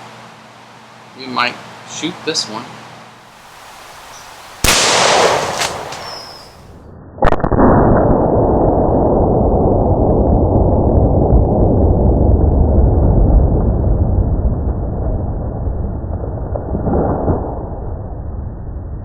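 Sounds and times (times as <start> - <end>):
sharp report: 3.4 - 6.8
pistol shot: 4.0 - 7.7.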